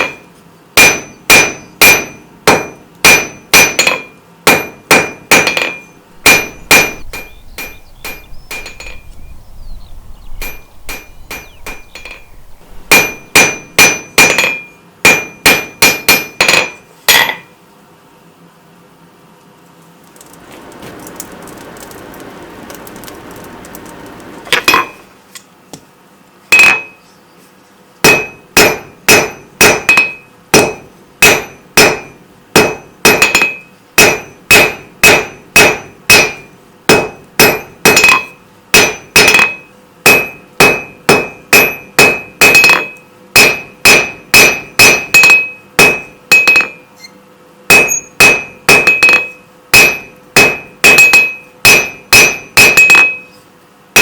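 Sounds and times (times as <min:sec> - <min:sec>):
hammer striking steel on anvil: 0:00.0 - 0:09.1, 0:10.4 - 0:17.5, 0:26.5 - 0:27.0, 0:28.0 - 0:46.9, 0:47.7 - 0:53.3.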